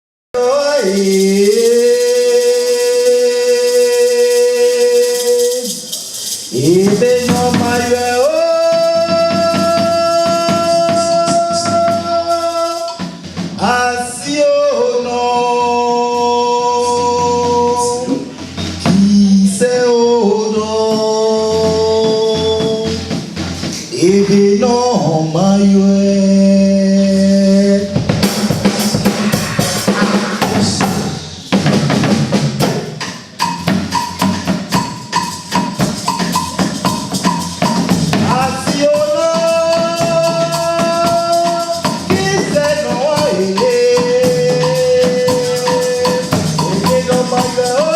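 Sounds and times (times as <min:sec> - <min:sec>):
bass: 0:00.3 - 0:47.9
person singing long notes: 0:00.4 - 0:05.8, 0:38.2 - 0:47.9
rhythmic percussion: 0:00.4 - 0:47.9.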